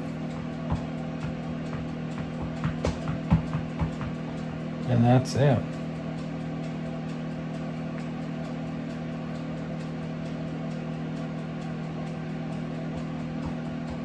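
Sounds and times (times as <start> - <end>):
appliance humming: 0.0 - 14.0.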